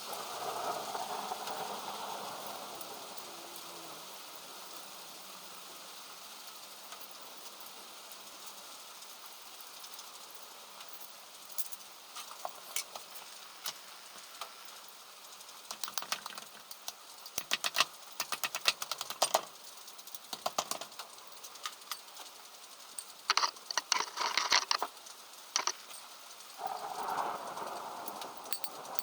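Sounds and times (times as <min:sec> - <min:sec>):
rain hiss: 0:00.0 - 0:29.0
metal clicks and clinks: 0:15.7 - 0:22.3, 0:23.0 - 0:24.9, 0:25.6 - 0:26.1
metal rattling: 0:23.0 - 0:24.9, 0:25.6 - 0:26.2.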